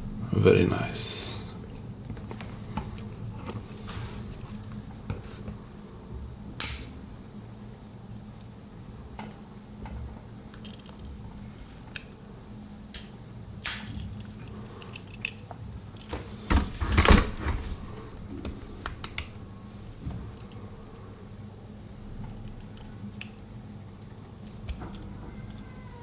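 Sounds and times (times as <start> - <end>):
steady low hum: 0.0 - 26.0
knocks and rustling: 16.1 - 19.4.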